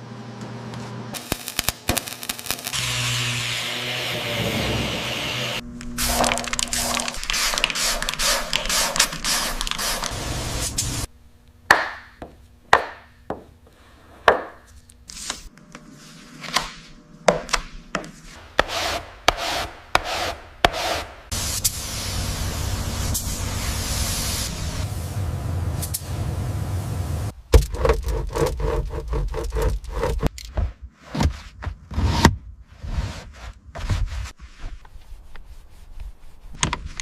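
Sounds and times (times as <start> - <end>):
scraping and rubbing on car body: 28.0 - 37.0.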